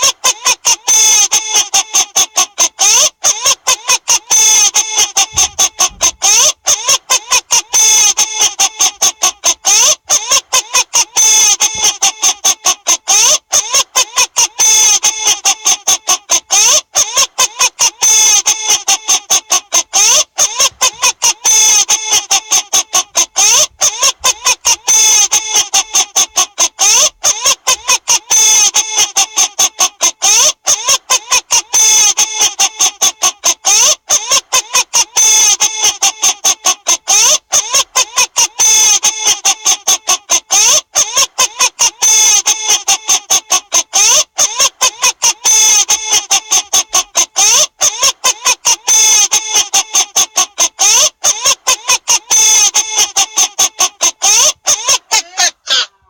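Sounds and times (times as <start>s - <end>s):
chicken-like squawks: 0.0s - 56.0s
loud bird squawking: 54.2s - 56.0s.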